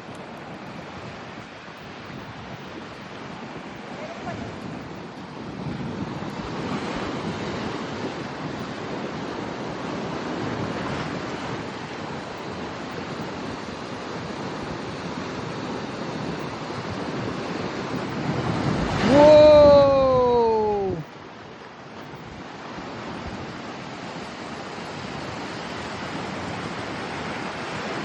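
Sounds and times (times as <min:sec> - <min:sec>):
wind on microphone: 0:00.0 - 0:21.1, 0:22.0 - 0:28.0
ocean surf washing ashore: 0:00.0 - 0:28.0
person exclaiming wow: 0:19.0 - 0:21.0.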